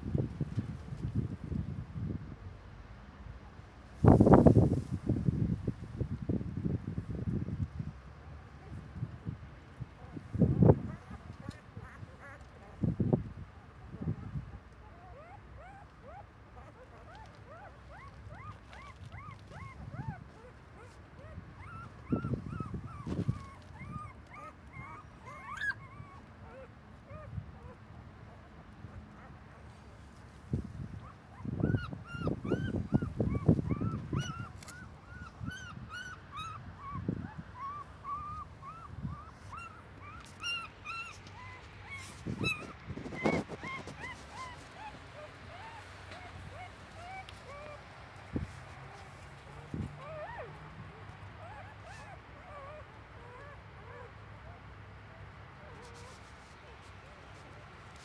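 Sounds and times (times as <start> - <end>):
puppies whimpering: 15.1 - 27.3, 31.0 - 54.1.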